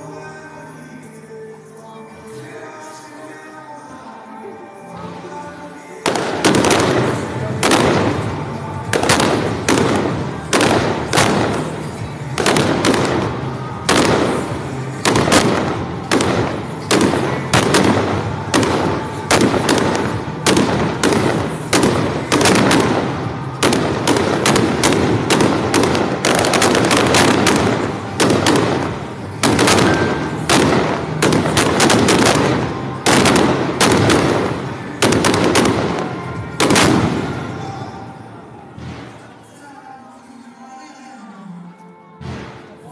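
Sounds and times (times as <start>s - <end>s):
fireworks bangs and crackles: 6.0s - 38.1s.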